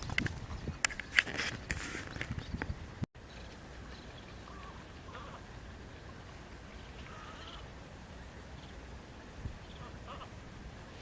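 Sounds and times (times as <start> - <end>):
wind rumble on microphone: 0.0 - 3.1, 8.6 - 11.0
faint bird calls: 4.0 - 5.5, 6.8 - 7.8, 9.6 - 10.4.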